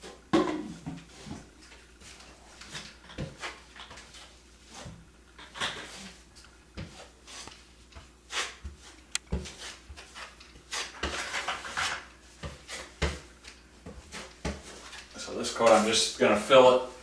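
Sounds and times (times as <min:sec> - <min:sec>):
taping knife scraping compound: 0:08.3 - 0:13.1.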